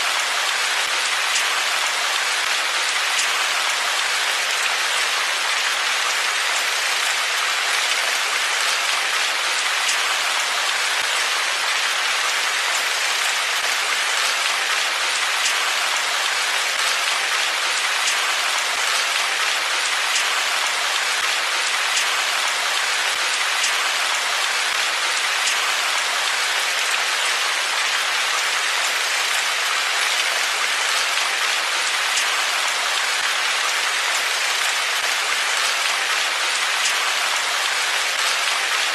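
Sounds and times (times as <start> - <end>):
steady rain: 0.0 - 38.9.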